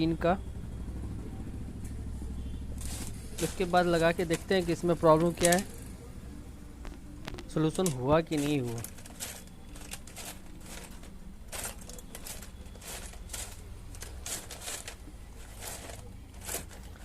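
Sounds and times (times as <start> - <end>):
rustling: 2.7 - 5.7, 6.9 - 17.0.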